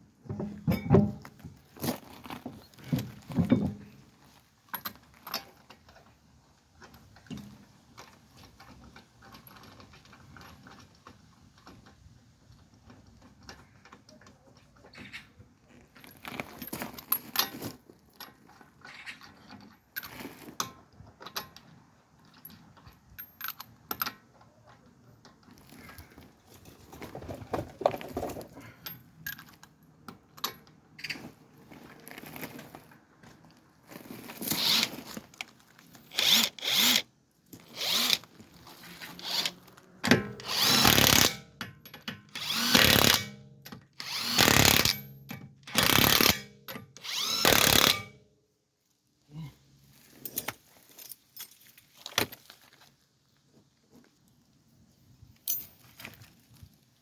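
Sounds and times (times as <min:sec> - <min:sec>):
tools clinking: 0:28.6 - 0:31.1, 0:34.4 - 0:37.0, 0:37.6 - 0:48.1, 0:55.4 - 0:56.3
power drill bursts: 0:34.6 - 0:34.9, 0:36.1 - 0:37.0, 0:37.7 - 0:38.2, 0:39.1 - 0:39.6, 0:40.4 - 0:41.4, 0:42.4 - 0:43.3, 0:44.0 - 0:45.0, 0:45.7 - 0:46.4, 0:47.0 - 0:48.1.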